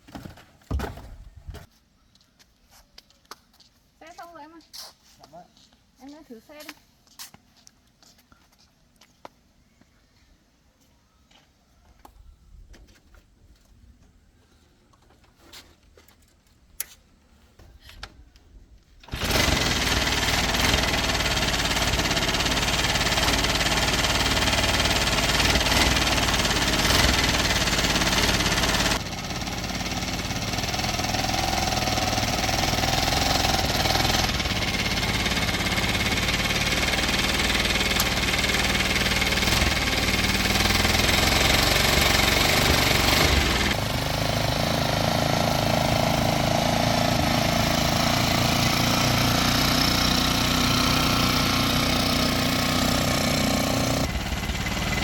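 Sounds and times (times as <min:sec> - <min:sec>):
engine running: 0:19.0 - 0:55.0.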